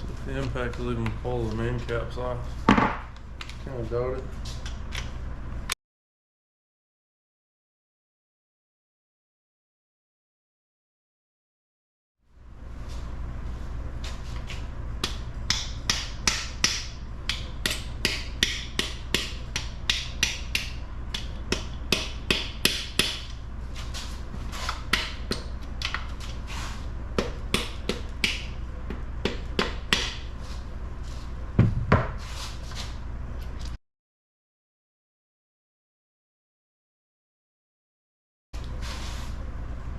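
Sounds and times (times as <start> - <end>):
hammer on metal: 15.0 - 23.3, 29.2 - 30.2.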